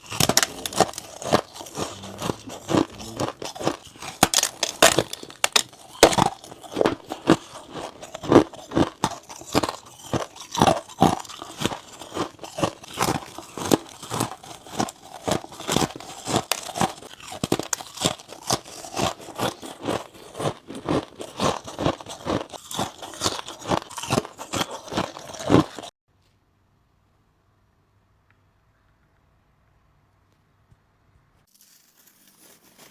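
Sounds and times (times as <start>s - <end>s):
ice crunching being chewed: 0.0s - 25.9s.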